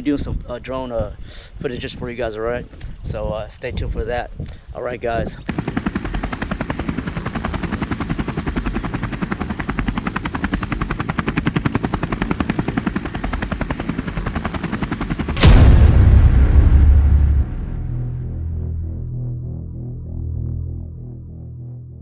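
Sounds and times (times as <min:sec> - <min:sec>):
helicopter rotor thudding: 0:05.5 - 0:20.4.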